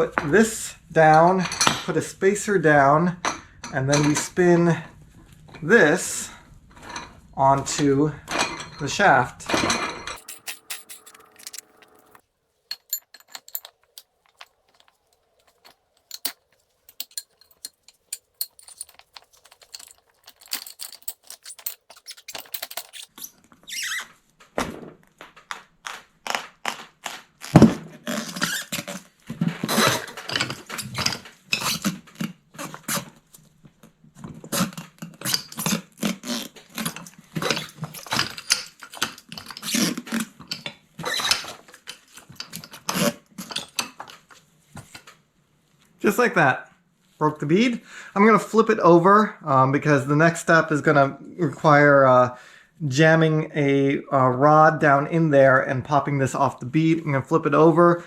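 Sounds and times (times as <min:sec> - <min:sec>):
metal clinking and rattling: 0:08.3 - 0:23.3, 0:29.6 - 0:31.9, 0:36.8 - 0:44.2
heavy thunk: 0:27.6 - 0:28.0.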